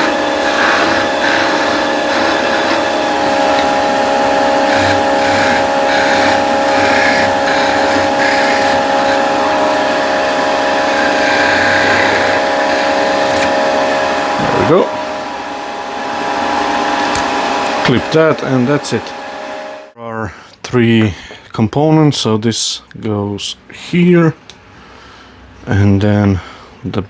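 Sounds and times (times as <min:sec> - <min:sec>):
turning tool scraping wood: 0:00.0 - 0:15.5, 0:16.6 - 0:19.2
wood lathe humming: 0:00.0 - 0:20.0.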